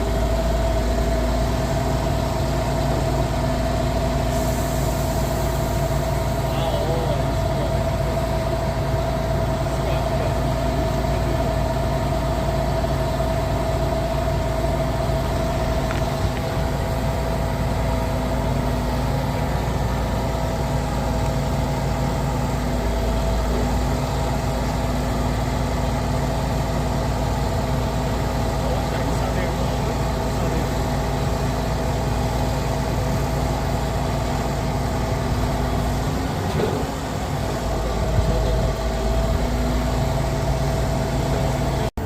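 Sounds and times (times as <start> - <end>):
diesel engine idling: 0.0 - 42.0
thin steady whine: 0.0 - 42.0.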